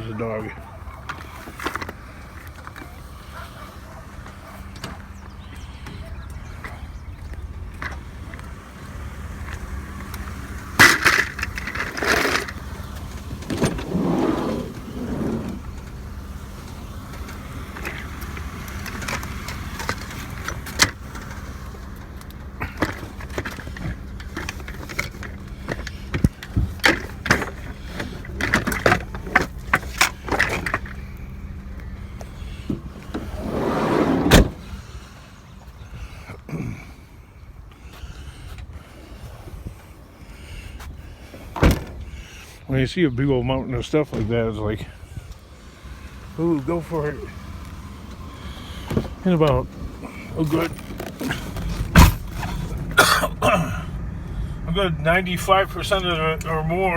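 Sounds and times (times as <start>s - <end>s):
minivan engine rumbling: 0.0s - 56.9s
rattles and knocks: 9.4s - 31.2s, 47.6s - 53.2s.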